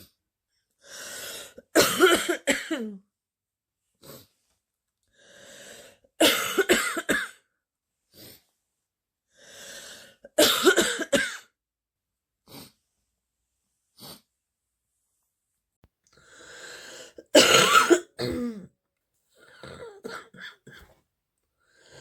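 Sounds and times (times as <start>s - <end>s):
girl coughing deeply: 1.8s - 3.0s, 6.2s - 7.4s, 10.4s - 11.5s, 17.3s - 18.7s, 19.5s - 20.9s
girl breathing in noisily: 16.2s - 17.2s.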